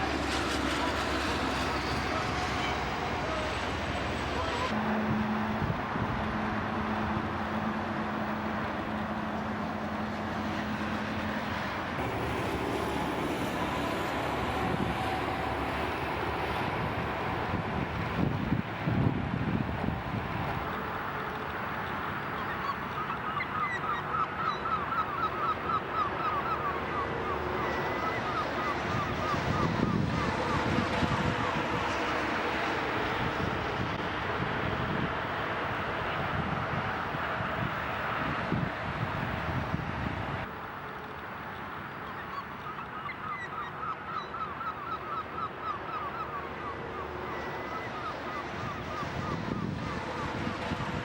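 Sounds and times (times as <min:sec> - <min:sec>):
waterfowl honking: 0:22.4 - 0:31.7, 0:42.0 - 0:50.8.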